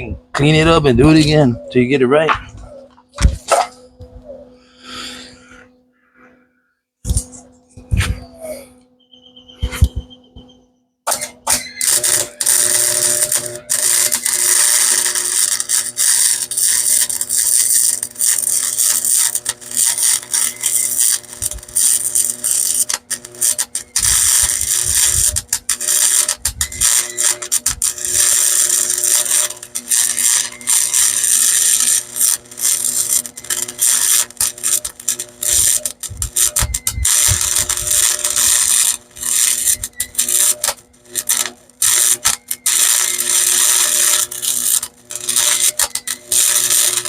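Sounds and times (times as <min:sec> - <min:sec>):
electric arc welding sizzle: 0:07.0 - 0:08.8, 0:11.1 - 0:47.0.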